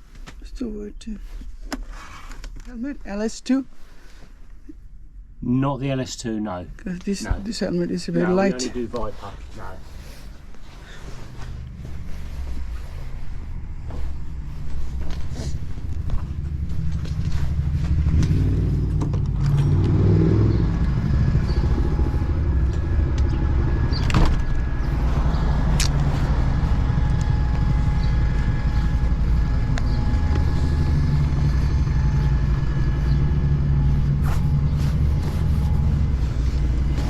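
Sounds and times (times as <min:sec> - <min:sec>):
motor vehicle rumbling: 0:07.2 - 0:37.0.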